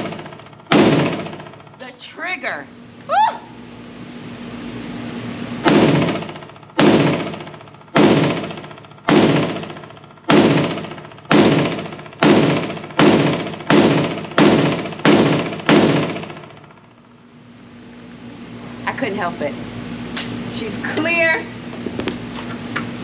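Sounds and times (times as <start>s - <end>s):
rifle shots with echo: 0.0s - 1.4s, 5.6s - 16.5s.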